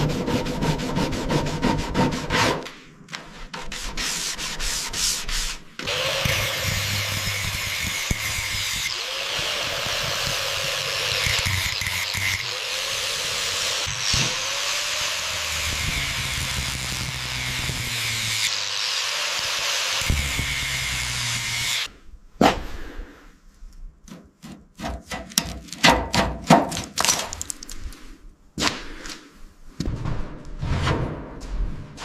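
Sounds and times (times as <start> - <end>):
power tool hissing: 5.9 - 21.9.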